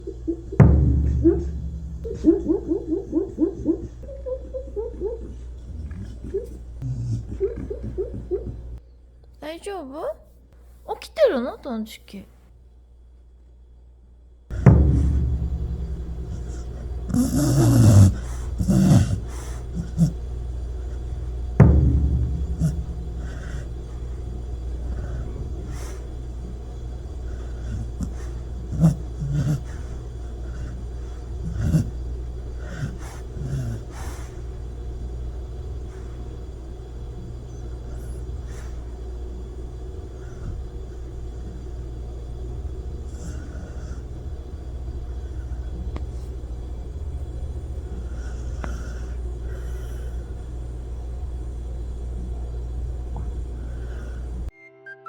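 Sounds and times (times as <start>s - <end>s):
steady low rumble: 0.0s - 8.8s, 14.3s - 54.5s
dog snoring: 4.6s - 8.8s, 14.5s - 35.1s, 42.8s - 46.4s, 47.2s - 50.6s.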